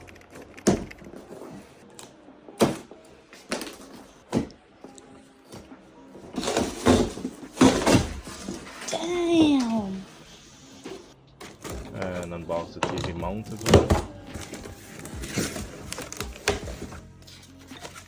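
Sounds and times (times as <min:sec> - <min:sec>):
cardboard scraping and rustling: 0:05.5 - 0:18.0.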